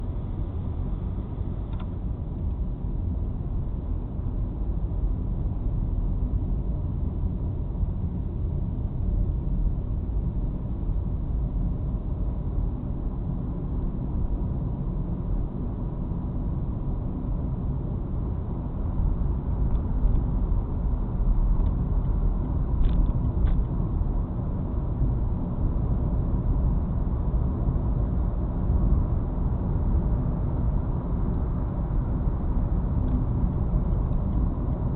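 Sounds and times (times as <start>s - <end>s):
car engine rumble: 0.0s - 34.9s.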